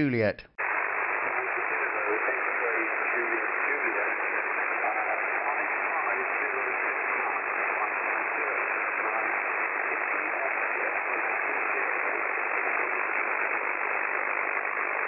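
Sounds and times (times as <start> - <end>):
radio receiver hiss: 0.0 - 15.0.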